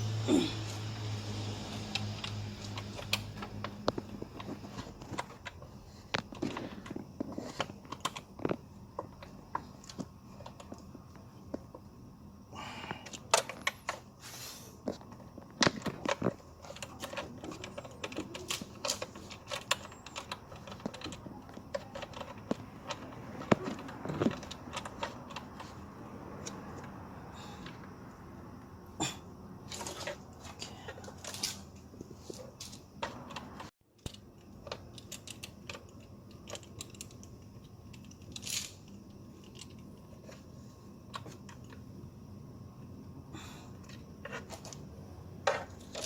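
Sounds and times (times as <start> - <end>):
tools clicking and rattling: 14.9 - 27.0, 29.6 - 40.4.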